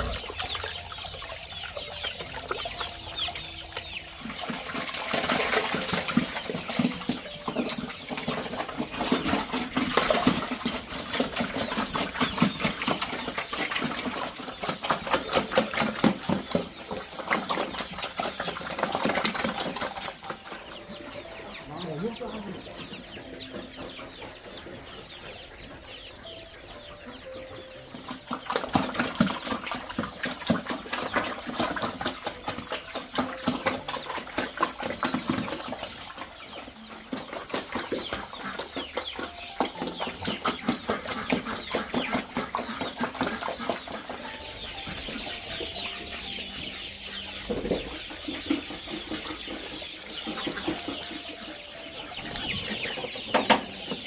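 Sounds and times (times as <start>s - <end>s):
chickens clucking: 0.0s - 54.0s
rapid clicking and rustling: 4.0s - 21.0s.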